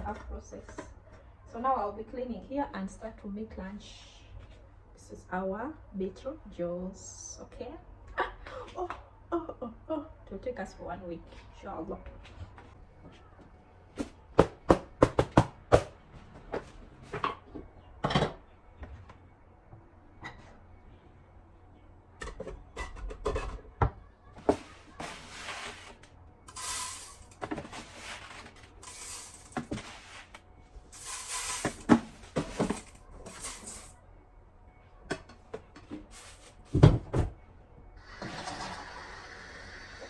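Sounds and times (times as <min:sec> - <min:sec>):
containers and utensils clattering: 0:22.2 - 0:34.0.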